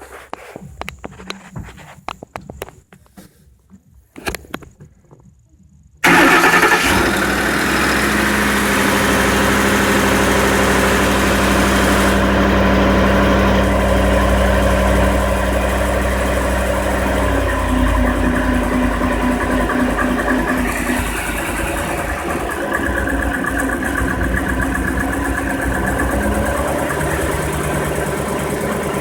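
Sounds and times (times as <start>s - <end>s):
pickup engine fast idle: 6.0s - 29.0s.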